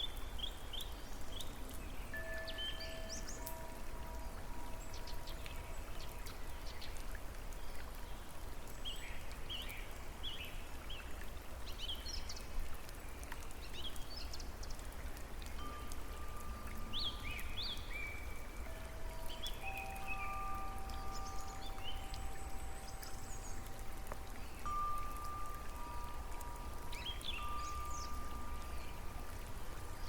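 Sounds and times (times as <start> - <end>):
hiss of running water: 13.6 - 30.0
birds chirping: 15.5 - 30.0
long steady tones: 15.6 - 30.0.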